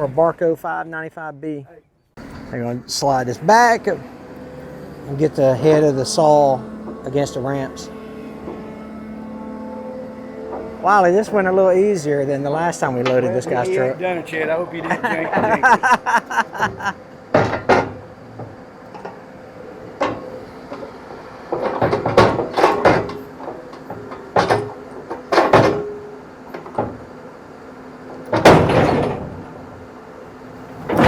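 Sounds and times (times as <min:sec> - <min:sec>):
diesel engine running: 0:02.2 - 0:31.0
metal clunks and bangs: 0:08.0 - 0:09.4, 0:10.2 - 0:11.6, 0:12.8 - 0:13.7, 0:14.8 - 0:19.2, 0:19.9 - 0:27.1, 0:28.1 - 0:29.9, 0:30.6 - 0:31.0.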